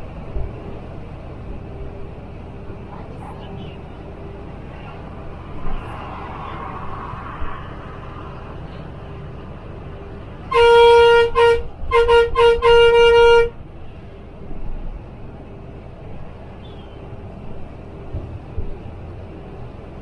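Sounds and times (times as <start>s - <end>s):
bus engine and road noise: 0.0s - 20.0s
bus horn blasts: 10.4s - 13.6s.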